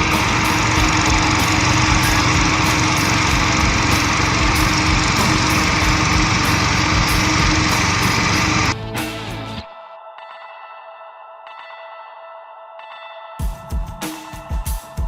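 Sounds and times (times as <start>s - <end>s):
engine running steadily: 0.0s - 8.8s.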